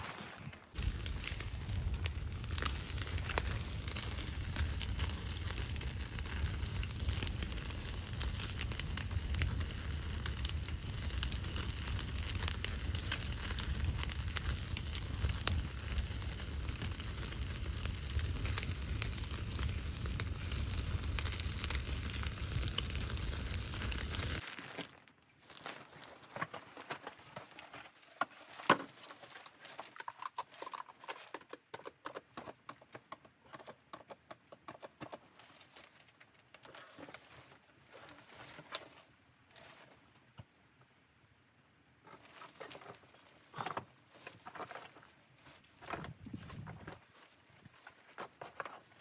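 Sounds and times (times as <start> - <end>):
wood fire crackling: 0.0 - 24.9.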